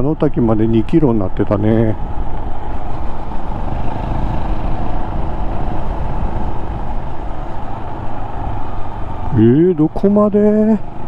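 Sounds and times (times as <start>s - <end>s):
wind and road noise: 0.0s - 11.0s
motorcycle engine running: 2.0s - 9.4s.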